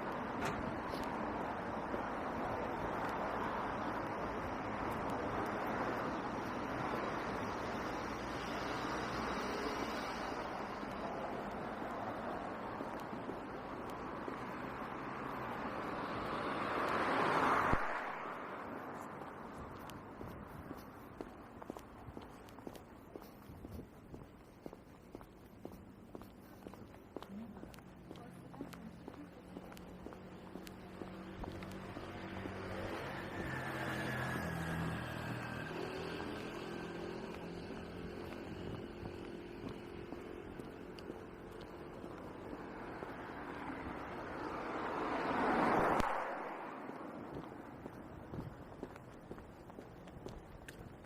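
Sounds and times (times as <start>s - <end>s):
road traffic: 0.0s - 51.0s
vehicle passing close by: 14.5s - 19.9s, 30.4s - 49.0s.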